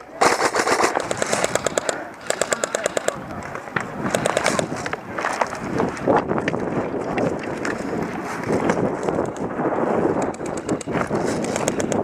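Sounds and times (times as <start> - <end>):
wind on microphone: 0.0 - 12.0.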